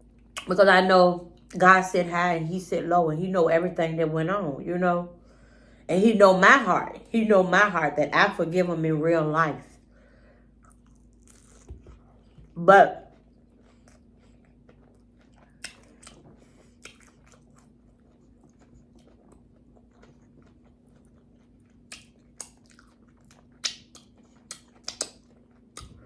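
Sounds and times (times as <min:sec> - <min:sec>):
chewing with wet mouth clicks: 0:10.6 - 0:26.0.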